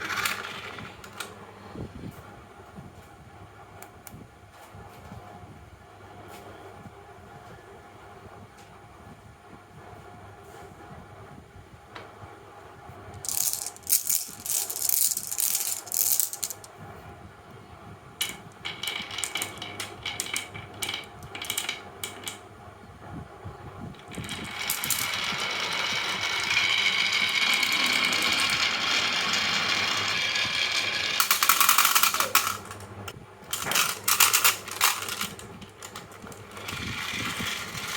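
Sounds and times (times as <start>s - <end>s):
marbles clattering down wooden run: 0.0s - 1.3s, 13.2s - 16.7s, 18.2s - 22.4s, 24.0s - 32.9s, 33.5s - 37.9s
marbles rolling rumble: 0.0s - 1.4s, 13.2s - 16.7s, 18.2s - 22.4s, 23.9s - 37.9s.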